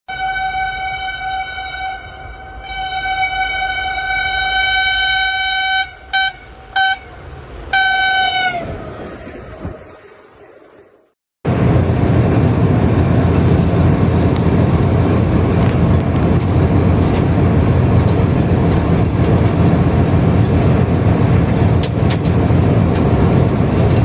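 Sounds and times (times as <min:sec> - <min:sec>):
locomotive horn blasts: 0:00.1 - 0:08.8
low train rumble: 0:00.1 - 0:24.0.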